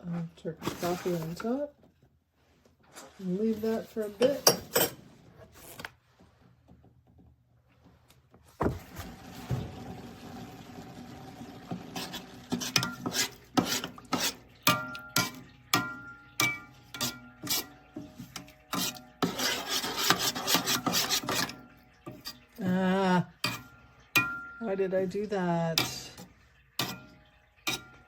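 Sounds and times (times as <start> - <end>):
metal spoon scraping pot: 11.9 - 24.7, 25.7 - 28.0
spoon clinking against pot: 12.6 - 17.8, 23.4 - 24.6, 26.8 - 28.0.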